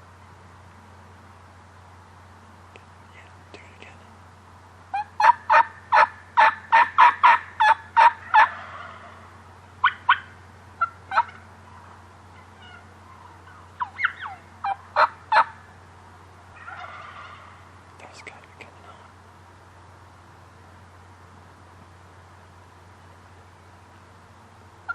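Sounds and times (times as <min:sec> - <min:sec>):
turkey calling: 0:04.9 - 0:15.8, 0:16.5 - 0:17.8.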